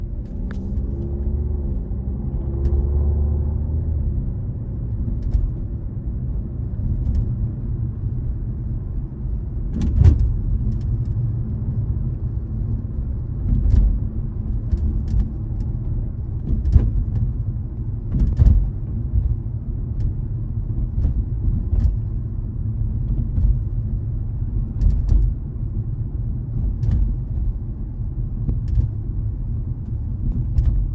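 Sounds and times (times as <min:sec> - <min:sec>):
car road rumble: 0:00.0 - 0:30.9
engine note rising: 0:00.3 - 0:04.3.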